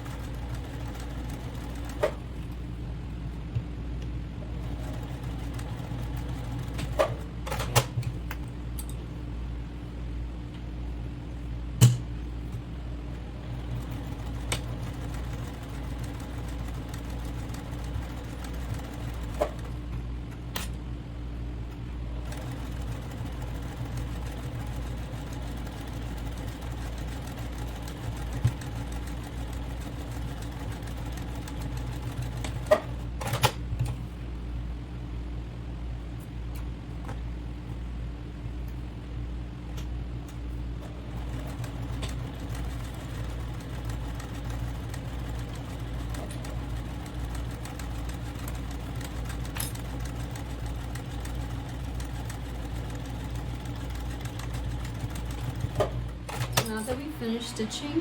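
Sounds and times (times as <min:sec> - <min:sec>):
sewing machine running: 0:00.0 - 0:02.4, 0:04.5 - 0:07.2, 0:13.4 - 0:19.8, 0:22.0 - 0:33.5, 0:40.9 - 0:58.0.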